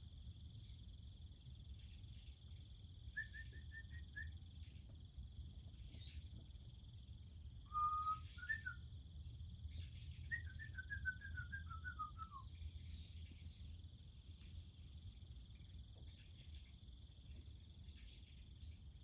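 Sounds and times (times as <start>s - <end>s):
crickets trilling: 0.0s - 19.0s
bird singing: 3.1s - 4.9s, 7.6s - 13.8s.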